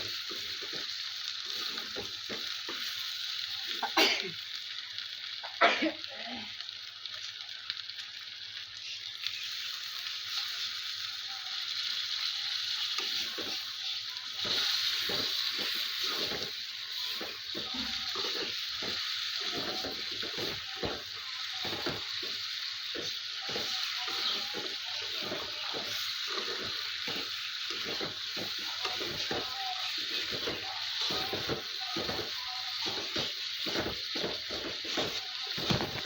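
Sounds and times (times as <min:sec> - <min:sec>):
food sizzling in a pan: 0:00.0 - 0:36.0
utensil knocking and scraping: 0:14.4 - 0:36.0.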